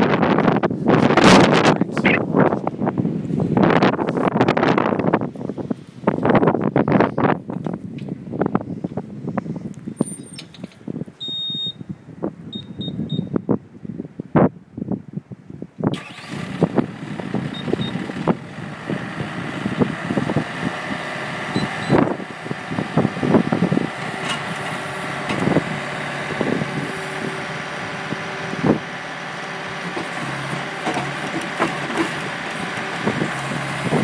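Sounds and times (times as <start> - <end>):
diesel engine starting and running: 15.9 - 34.0.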